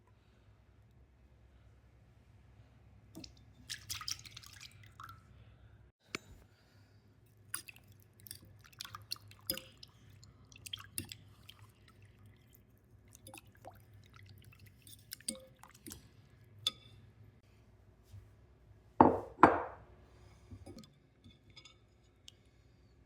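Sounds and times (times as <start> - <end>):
small wet sounds: 3.1 - 6.4, 7.2 - 17.4.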